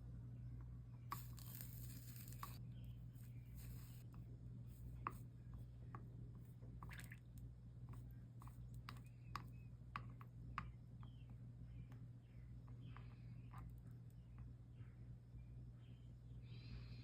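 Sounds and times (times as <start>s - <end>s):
low electrical hum: 0.0s - 17.0s
solder sizzling and crackling: 0.7s - 5.8s.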